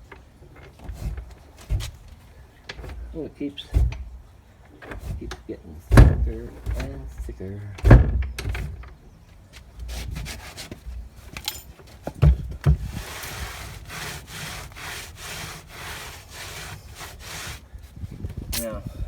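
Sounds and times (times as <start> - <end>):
hand tool scraping wood: 0.5 - 7.4, 9.6 - 18.1
knocks on wood: 5.9 - 7.0.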